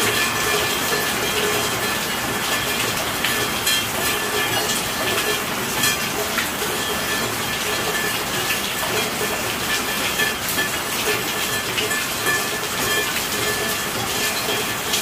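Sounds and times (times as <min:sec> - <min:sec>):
raindrop impacts ticking: 0:00.0 - 0:15.0
steady rainfall hiss: 0:00.0 - 0:15.0.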